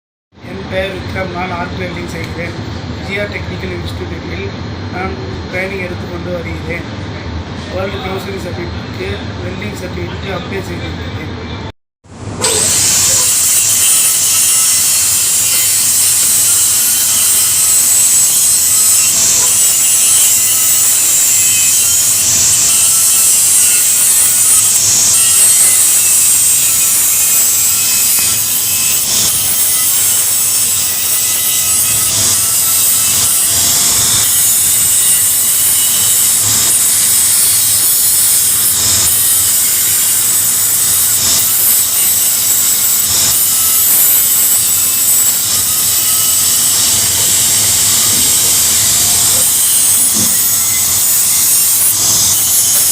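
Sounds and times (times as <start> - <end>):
welding arc hissing and crackling: 12.5 - 52.9.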